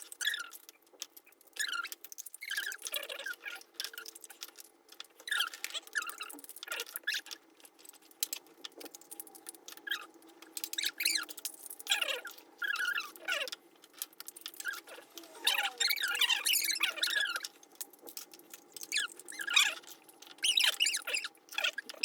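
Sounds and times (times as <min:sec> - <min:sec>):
wet squeaky slurps: 0:14.6 - 0:17.4, 0:18.8 - 0:22.0.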